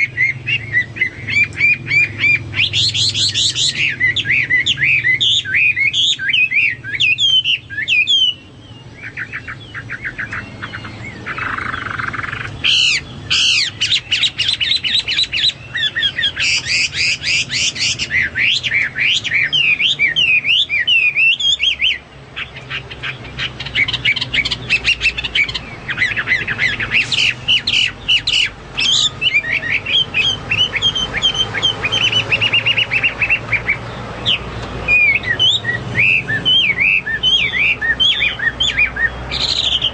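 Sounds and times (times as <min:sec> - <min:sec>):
bird singing whistles: 0:00.0 - 0:22.0, 0:23.4 - 0:39.9
harsh bird rasp: 0:09.0 - 0:39.9.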